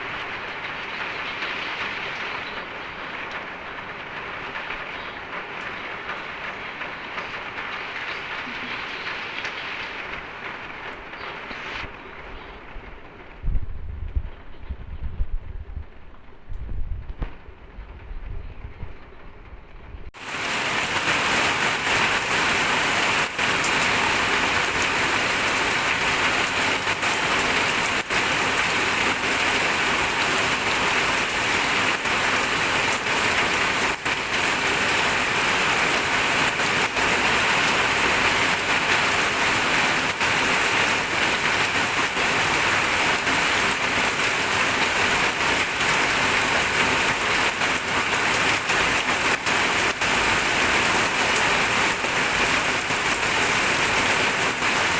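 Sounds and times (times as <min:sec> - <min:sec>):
steady rain falling: 0:00.0 - 0:54.9.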